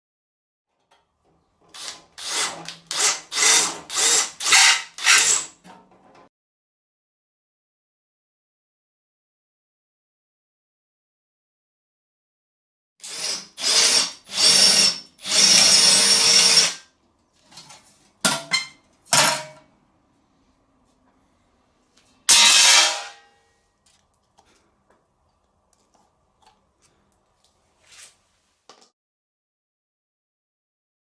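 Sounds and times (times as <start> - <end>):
power drill whining: 1.7 - 5.5, 13.0 - 16.8.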